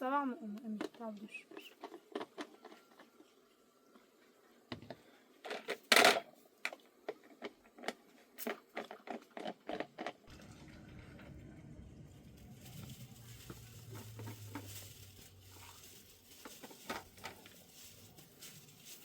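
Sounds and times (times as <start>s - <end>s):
low rumble: 10.3s - 15.6s.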